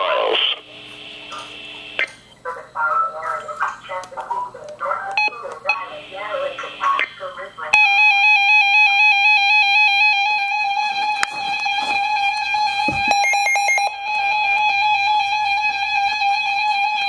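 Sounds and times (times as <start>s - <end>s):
wavering electronic alert tone: 7.8s - 17.0s.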